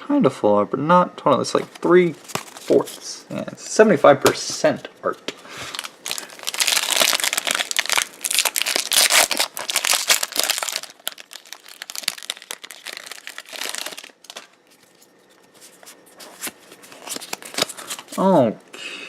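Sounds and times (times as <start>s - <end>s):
foil wrapper crinkling: 5.6s - 18.2s.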